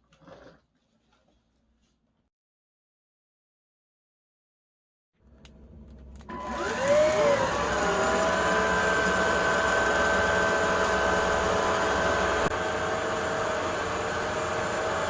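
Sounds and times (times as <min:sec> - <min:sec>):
vacuum cleaner motor whine: 0:06.2 - 0:15.0.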